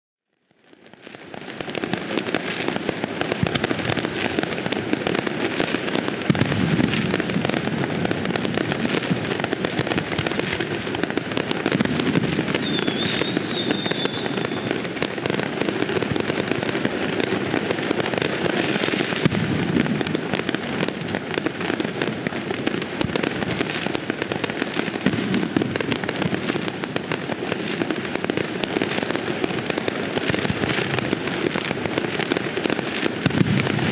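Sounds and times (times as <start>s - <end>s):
fireworks bangs and crackling: 0.4s - 33.9s
firework whistle: 11.8s - 14.9s.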